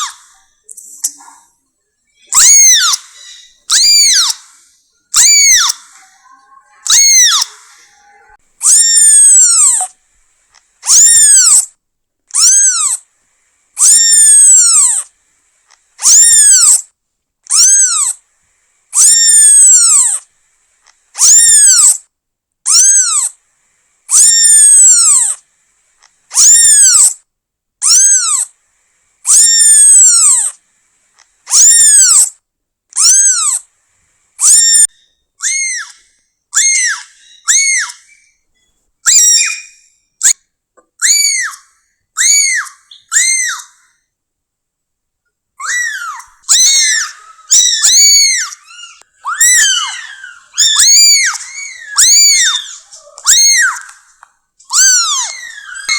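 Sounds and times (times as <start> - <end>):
kitten meowing: 2.3 - 4.6, 5.2 - 9.9, 10.8 - 11.7, 12.3 - 13.0, 13.8 - 15.1, 16.0 - 16.9, 17.5 - 18.2, 19.0 - 20.2, 22.7 - 23.3, 26.3 - 27.2, 27.8 - 28.5, 31.5 - 32.3, 33.0 - 33.6, 34.4 - 36.0, 36.6 - 38.2, 39.1 - 40.4, 42.2 - 43.8, 45.6 - 54.1, 54.7 - 55.9.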